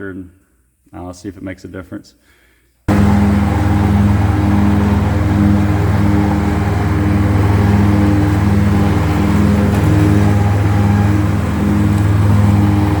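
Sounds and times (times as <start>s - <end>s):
ride-on mower diesel engine: 2.9s - 13.0s.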